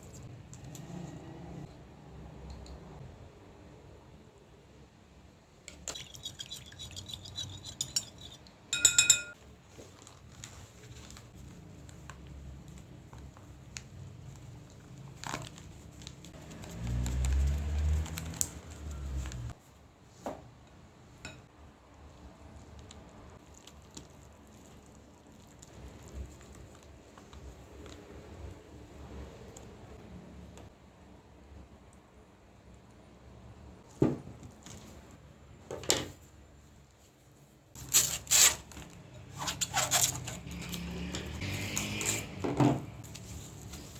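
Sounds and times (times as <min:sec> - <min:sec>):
utensils and dishes clinking: 0:05.9 - 0:09.4.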